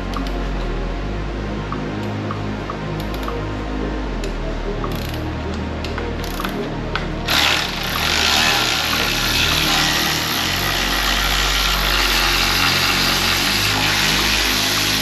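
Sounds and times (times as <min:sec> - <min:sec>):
handheld power tool running: 0:07.3 - 0:15.0.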